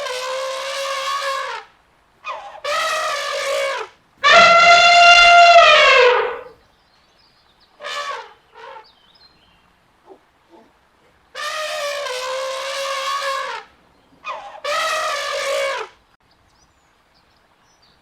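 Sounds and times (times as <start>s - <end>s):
elephant trumpeting: 4.2s - 6.6s.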